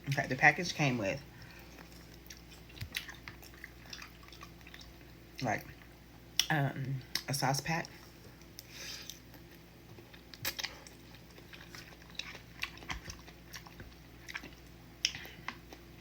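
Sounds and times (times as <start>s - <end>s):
person chewing noodles: 1.3s - 5.2s, 7.9s - 16.0s.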